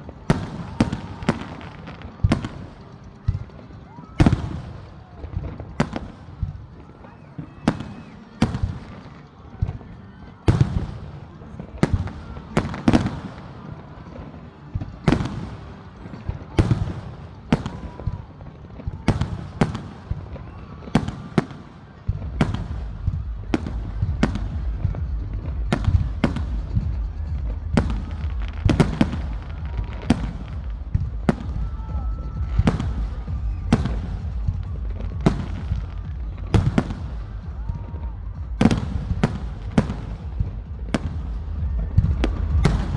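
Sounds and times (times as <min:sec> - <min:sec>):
fireworks bangs and cracks: 0:00.0 - 0:42.9
steady low rumble: 0:22.8 - 0:42.9.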